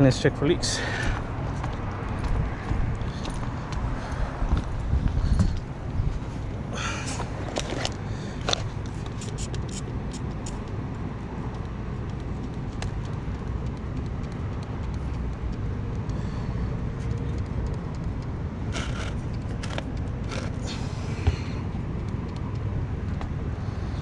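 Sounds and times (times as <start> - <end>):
low outdoor rumble: 0.0 - 24.0
small clicks: 11.5 - 16.2.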